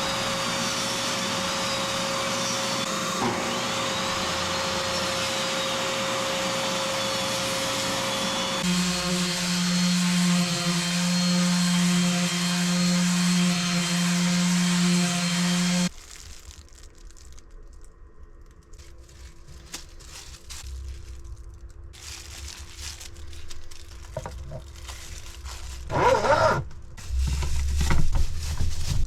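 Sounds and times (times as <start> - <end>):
power machinery humming and whining: 0.0 - 15.9.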